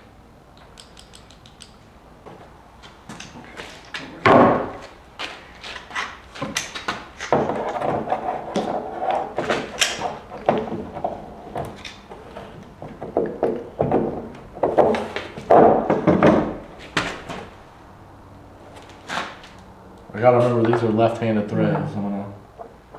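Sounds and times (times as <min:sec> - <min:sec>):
tools clicking and clinking: 0:00.5 - 0:01.9
clatter of parts: 0:00.6 - 0:01.9, 0:09.3 - 0:17.5.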